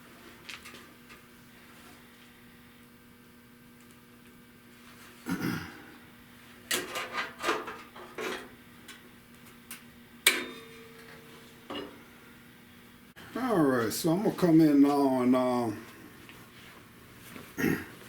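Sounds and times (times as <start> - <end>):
steel clanking and clinking: 6.7 - 9.0, 10.3 - 12.0.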